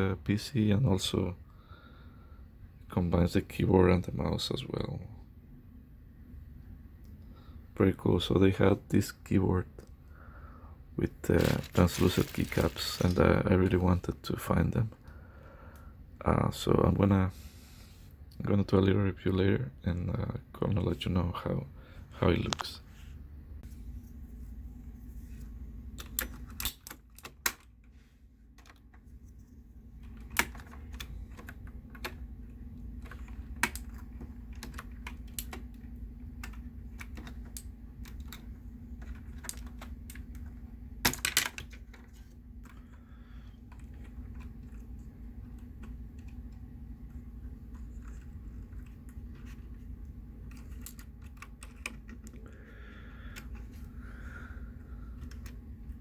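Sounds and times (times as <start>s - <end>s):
steady low hum: 0.0s - 56.0s
keycaps clicking on keyboard: 33.0s - 43.0s, 50.4s - 52.5s.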